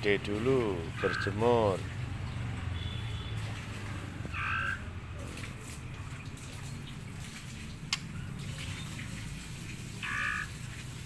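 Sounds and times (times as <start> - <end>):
raspy bird call: 4.3 - 4.9, 10.0 - 10.6.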